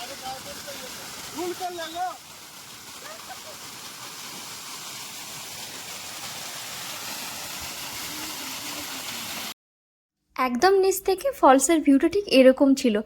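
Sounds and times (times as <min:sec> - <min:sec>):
waterfall rushing and splashing: 0:00.0 - 0:09.6.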